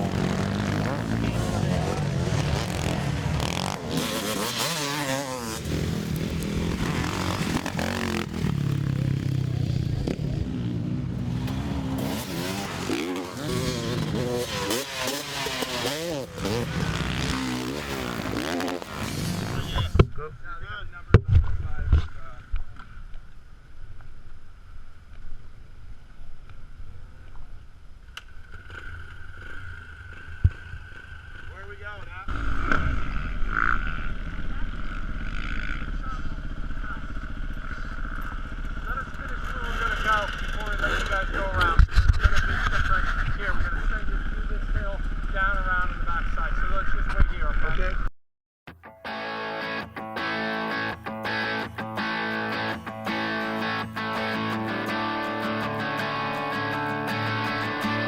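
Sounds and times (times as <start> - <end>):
motorcycle engines revving: 0.0 - 20.1, 28.2 - 48.0, 50.2 - 58.0.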